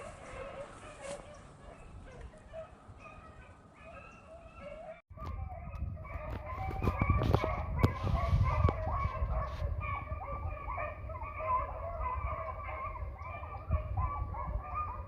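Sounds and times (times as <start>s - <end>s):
dogs baying and howling: 0.0s - 15.0s.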